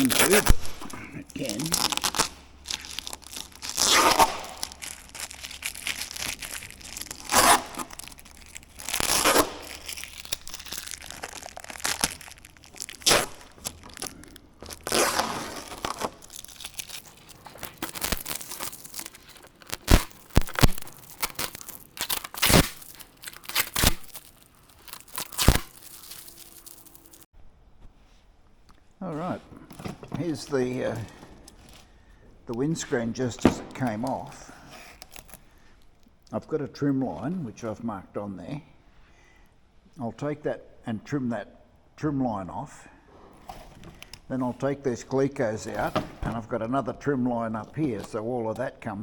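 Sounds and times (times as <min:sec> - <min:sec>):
packaging tearing and crinkling: 0:00.0 - 0:27.3, 0:34.8 - 0:35.5
plastic snaps and crackles: 0:00.0 - 0:27.3.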